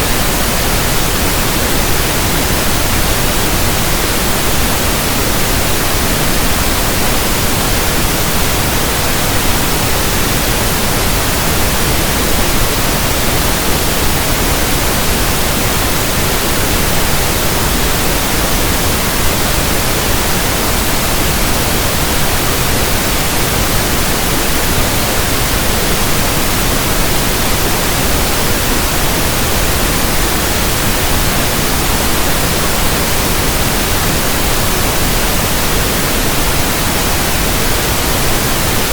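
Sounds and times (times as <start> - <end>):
pink noise hiss: 0.0 - 38.9.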